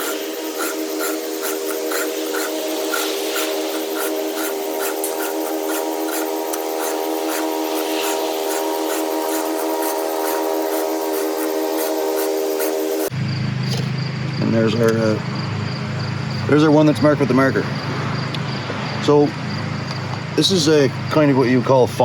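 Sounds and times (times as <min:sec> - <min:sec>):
file rasping on chainsaw chain: 0:00.0 - 0:13.1
steady background tone: 0:00.0 - 0:22.0.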